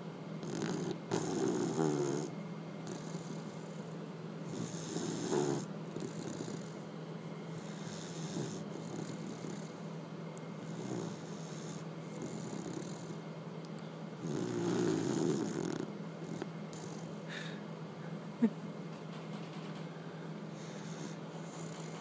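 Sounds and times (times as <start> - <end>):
pet snoring: 0.4 - 6.8, 7.6 - 9.8, 10.6 - 13.2, 14.2 - 17.1, 20.6 - 22.0.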